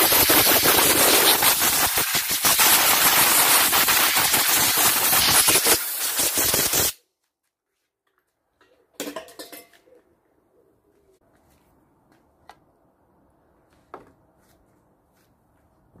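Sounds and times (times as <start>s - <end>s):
compressed air blow gun hissing: 0.0s - 7.0s.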